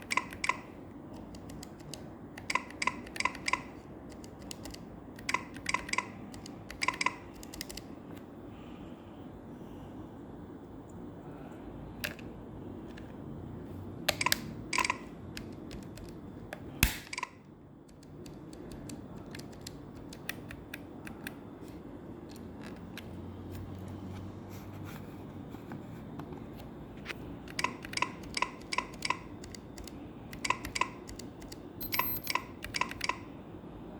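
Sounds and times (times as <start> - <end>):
keyboard key clicks: 0.0 - 7.9, 14.1 - 21.4, 27.4 - 33.2
steady low hum: 0.0 - 33.9.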